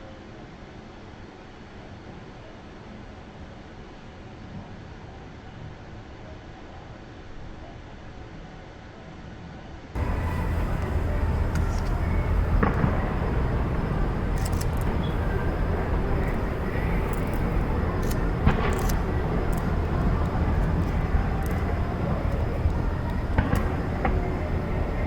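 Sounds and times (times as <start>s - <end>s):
low rumble: 10.0s - 25.0s.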